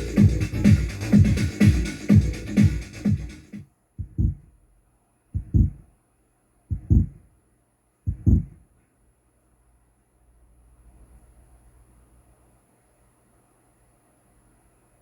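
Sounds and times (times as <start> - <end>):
low double thumps: 0.0 - 3.4, 4.0 - 4.5, 5.4 - 5.8, 6.7 - 7.2, 8.1 - 8.6
electronic demo music: 0.0 - 4.4.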